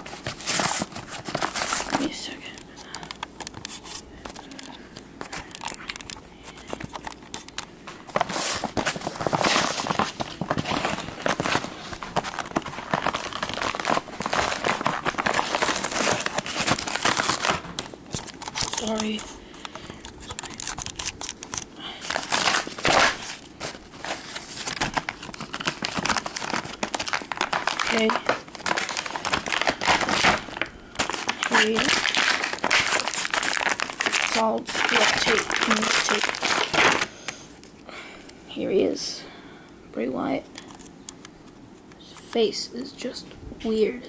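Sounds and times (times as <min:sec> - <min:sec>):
packaging clicks and crackles: 0:00.0 - 0:37.4
packaging crinkling and tearing: 0:00.0 - 0:37.8.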